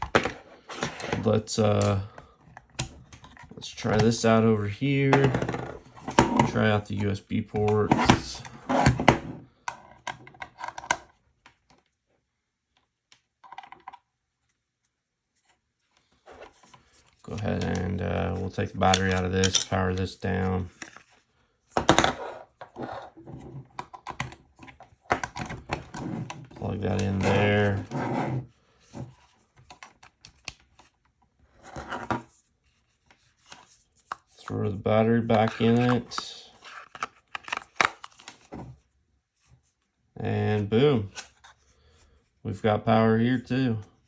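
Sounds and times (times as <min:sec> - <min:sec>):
plastic plugs clicking and rattling: 0:18.8 - 0:21.1, 0:35.3 - 0:38.5.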